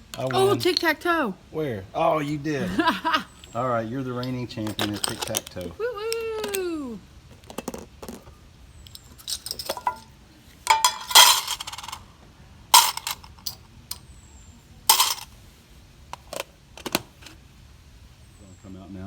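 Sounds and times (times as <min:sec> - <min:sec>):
small hard objects clinking: 0:04.2 - 0:05.8, 0:08.9 - 0:12.0, 0:12.8 - 0:13.6, 0:14.9 - 0:15.3.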